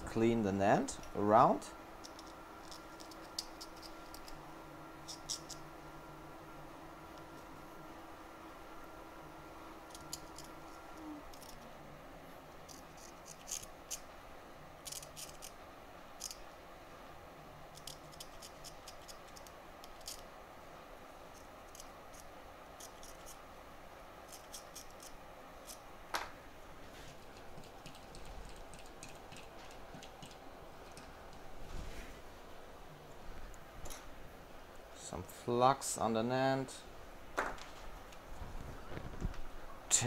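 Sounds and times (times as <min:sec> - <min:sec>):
small hand tool scraping: 0:12.7 - 0:14.0, 0:17.8 - 0:20.2.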